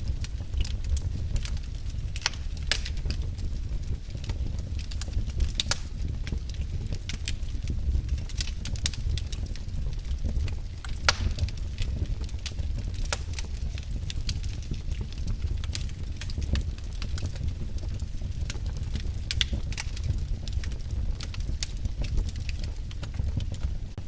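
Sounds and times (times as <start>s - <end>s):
wood fire crackling and popping: 0.0s - 24.0s.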